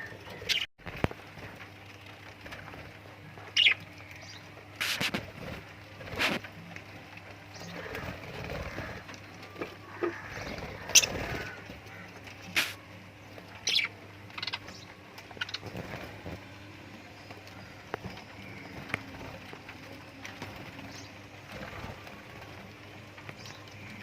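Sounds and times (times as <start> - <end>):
parrots chirping: 0.0 - 0.7, 3.6 - 3.8, 10.0 - 11.6, 13.6 - 15.7.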